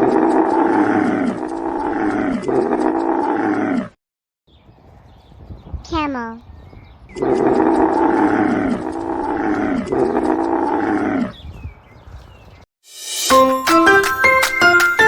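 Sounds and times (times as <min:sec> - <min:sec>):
camel calling: 0:07.2 - 0:11.4
plinking music jingle: 0:13.0 - 0:15.0.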